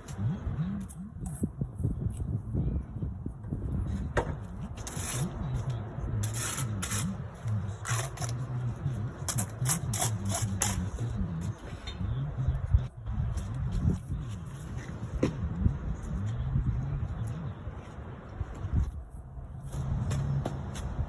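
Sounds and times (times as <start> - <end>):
steady low hum: 0.0 - 21.0
trowel scraping mortar on brick: 4.8 - 11.2.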